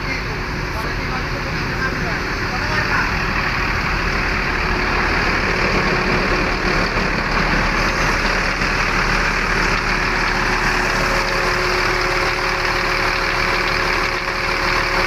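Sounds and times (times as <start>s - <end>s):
diesel bus engine rumbling: 0.0s - 15.0s.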